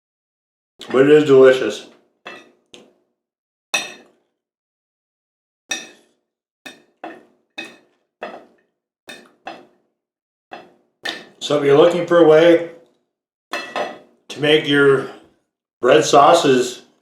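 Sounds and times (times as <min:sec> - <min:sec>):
fork and knife clinking on plate: 0:13.6 - 0:14.1.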